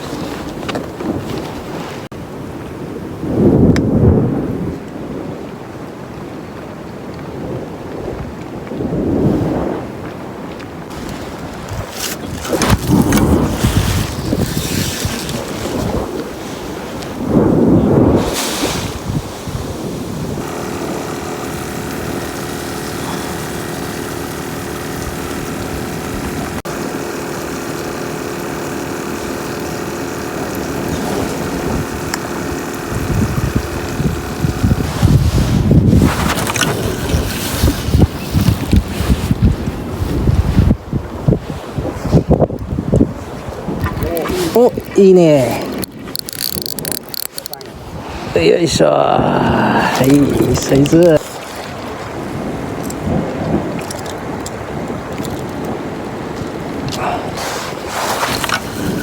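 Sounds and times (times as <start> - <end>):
wind buffeting microphone: 0.0 - 59.0
boat engine droning: 10.8 - 40.1, 45.6 - 59.0.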